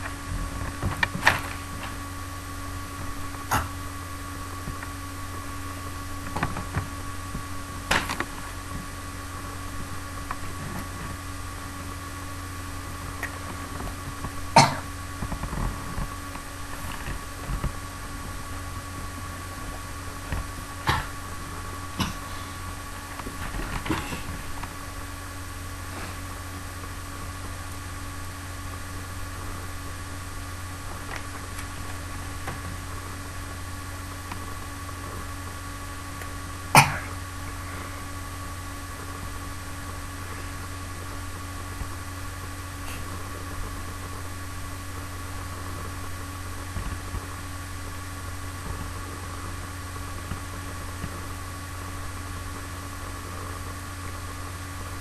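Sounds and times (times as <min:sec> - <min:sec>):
low electrical hum: 0:00.0 - 0:55.0
person coughing: 0:03.5 - 0:03.8, 0:14.6 - 0:14.9, 0:20.8 - 0:21.2, 0:22.0 - 0:22.5, 0:36.8 - 0:37.2.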